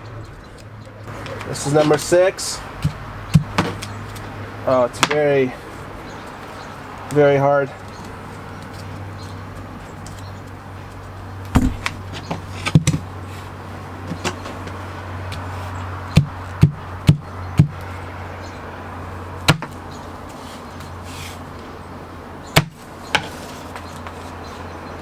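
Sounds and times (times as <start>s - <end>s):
sledgehammer striking paper: 2.8s - 3.9s, 11.6s - 13.1s, 19.5s - 19.8s, 22.6s - 23.8s.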